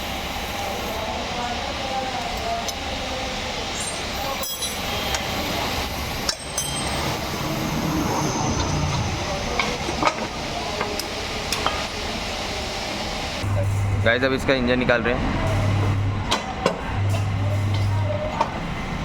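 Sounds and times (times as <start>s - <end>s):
steady background noise: 0.0s - 19.0s
metal tools clinking: 3.8s - 5.3s, 6.3s - 7.3s.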